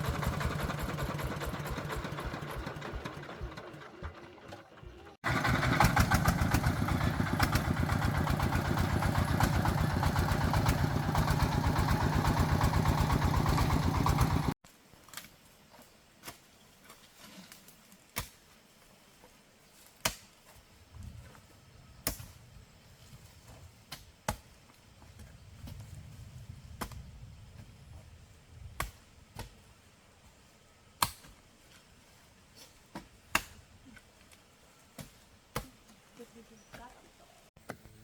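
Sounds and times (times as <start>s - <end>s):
hand tool chopping wood: 20.0s - 20.3s, 31.0s - 31.4s, 32.9s - 34.1s, 35.0s - 36.0s.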